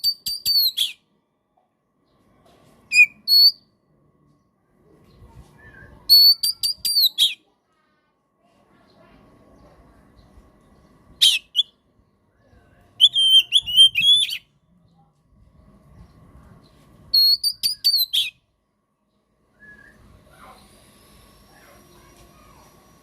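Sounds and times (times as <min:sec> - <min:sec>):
bird singing whistled notes: 0:00.0 - 0:01.0, 0:02.9 - 0:03.7, 0:05.6 - 0:07.4, 0:13.0 - 0:14.5, 0:17.1 - 0:18.4, 0:19.5 - 0:20.1.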